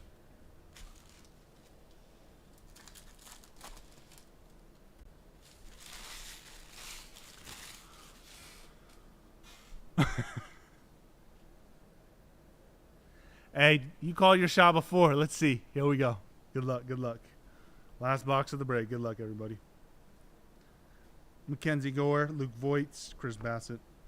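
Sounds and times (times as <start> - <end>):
foil tearing: 0.7 - 1.8, 2.5 - 4.3, 5.4 - 8.8
foil wrappers crinkling: 0.7 - 4.7, 5.4 - 9.0.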